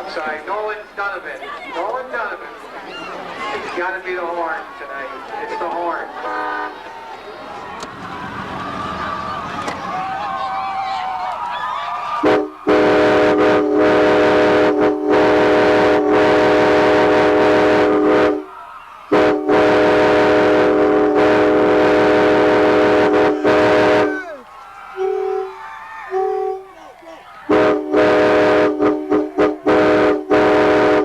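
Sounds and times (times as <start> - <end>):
locomotive air horn chord: 6.1 - 6.9, 12.2 - 18.5, 19.1 - 24.2, 24.9 - 26.7, 27.5 - 31.0.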